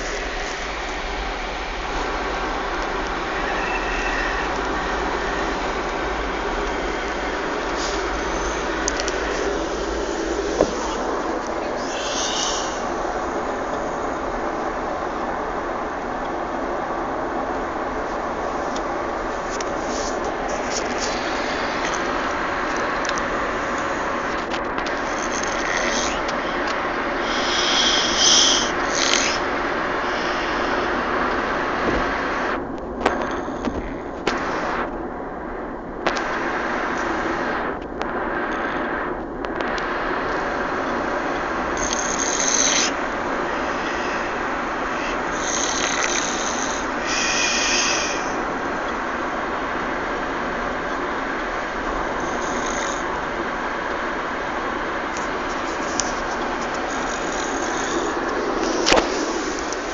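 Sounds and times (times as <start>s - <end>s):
car cabin road and engine noise: 0.0s - 59.9s
baby snoring: 3.2s - 13.4s, 25.0s - 30.9s, 41.6s - 48.7s, 52.1s - 53.2s, 55.6s - 59.6s.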